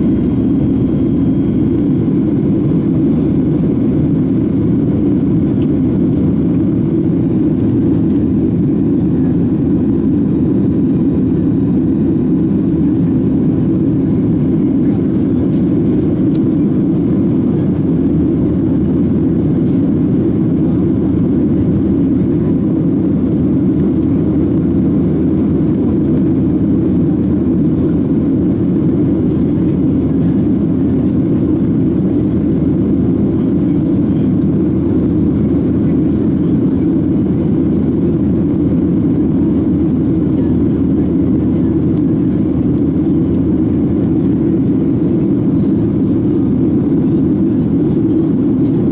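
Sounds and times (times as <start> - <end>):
aircraft cabin engine rumble: 0.0 - 48.9.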